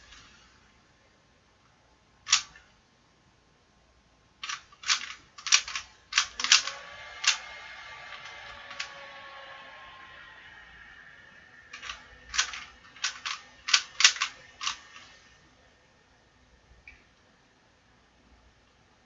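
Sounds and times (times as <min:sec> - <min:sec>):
plastic puzzle cube clicking: 0:02.3 - 0:02.8, 0:04.4 - 0:09.0, 0:11.7 - 0:15.1.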